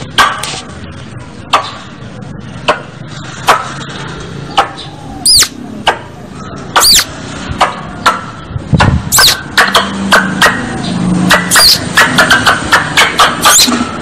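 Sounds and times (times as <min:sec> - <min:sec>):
squirrel chip calls: 0:04.4 - 0:05.7, 0:06.4 - 0:07.2, 0:09.1 - 0:09.4, 0:11.4 - 0:11.9, 0:13.4 - 0:13.8
squirrel whistled calls: 0:04.5 - 0:05.6, 0:06.7 - 0:07.1, 0:09.1 - 0:09.4, 0:11.5 - 0:11.9, 0:13.4 - 0:13.8.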